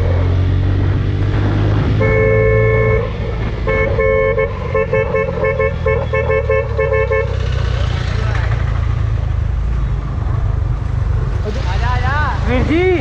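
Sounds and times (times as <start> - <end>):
vehicle horn honking: 1.9 - 7.9.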